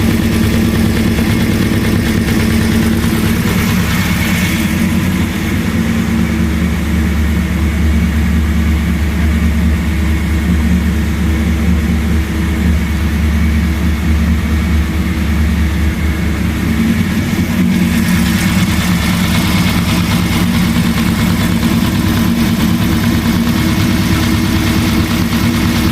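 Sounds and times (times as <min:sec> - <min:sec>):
car engine idling: 0:00.0 - 0:25.9.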